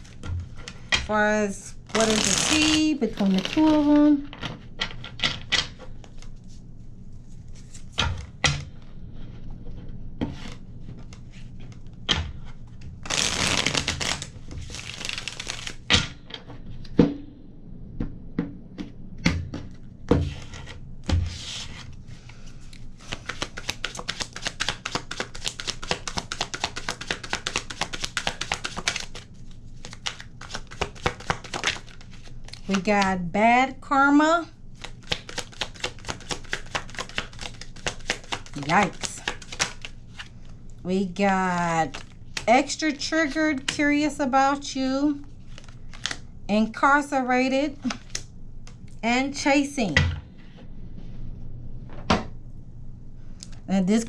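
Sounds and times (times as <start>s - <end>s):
cards being shuffled: 1.9s - 6.7s, 7.3s - 8.0s, 10.3s - 16.0s, 22.7s - 33.1s, 34.8s - 40.6s, 41.8s - 43.8s, 45.2s - 46.2s, 47.8s - 48.3s
rapid card flicking: 23.1s - 29.2s, 34.8s - 39.9s.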